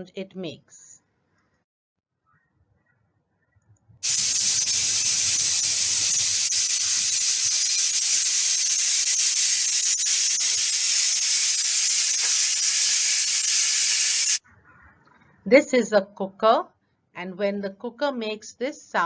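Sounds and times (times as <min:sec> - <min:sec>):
pressure cooker whistle hissing: 0:04.0 - 0:14.4.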